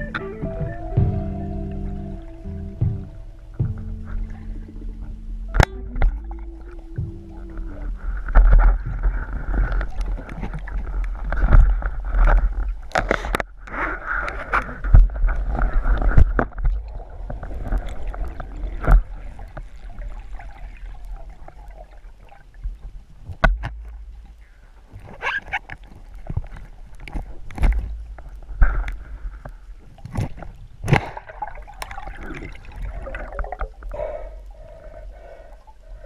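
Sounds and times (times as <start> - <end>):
low underwater rumble: 0.0 - 12.9, 14.7 - 24.9, 26.1 - 36.0
underwater gurgling and sloshing: 0.0 - 36.0
sharp clicks and knocks: 23.3 - 24.3.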